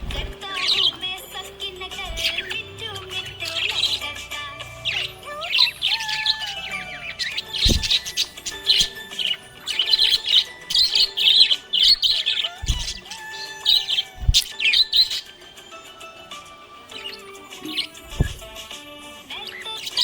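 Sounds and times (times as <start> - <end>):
dull low thumps: 0.0 - 0.4, 2.0 - 2.5, 7.6 - 8.1, 12.6 - 13.0, 14.2 - 14.5, 18.0 - 18.6
budgerigar chirping: 0.0 - 18.7, 19.3 - 20.0.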